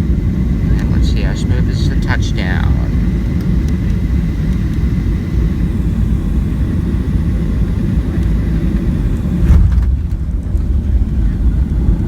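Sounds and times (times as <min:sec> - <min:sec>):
jet engine rumble in cabin: 0:00.0 - 0:12.0
thump: 0:09.5 - 0:10.0.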